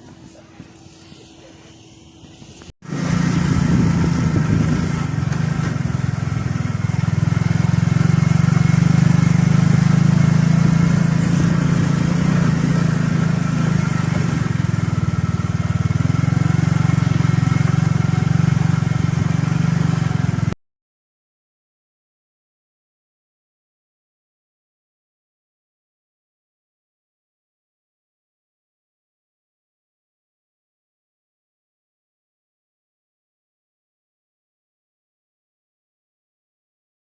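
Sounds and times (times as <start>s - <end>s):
engine running with low hum: 0.0s - 20.6s.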